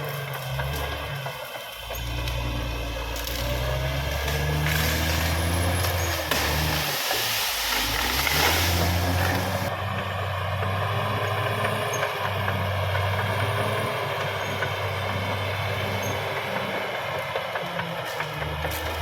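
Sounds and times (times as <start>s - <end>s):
bulldozer diesel engine running: 0.0s - 19.0s
broad hiss: 6.3s - 9.7s.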